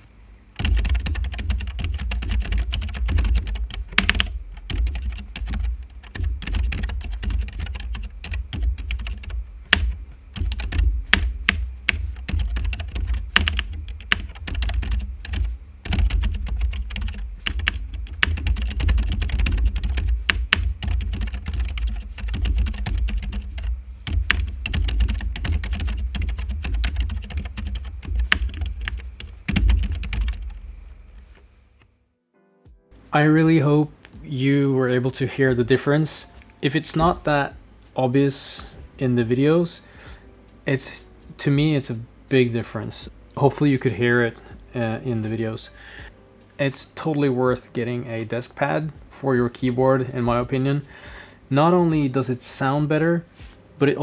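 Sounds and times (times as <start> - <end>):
fast typing on mechanical keyboard: 0.6 - 31.0.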